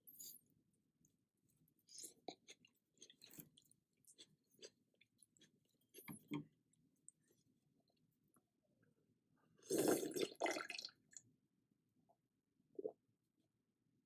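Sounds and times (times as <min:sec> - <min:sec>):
person chewing food: 0:01.9 - 0:06.3.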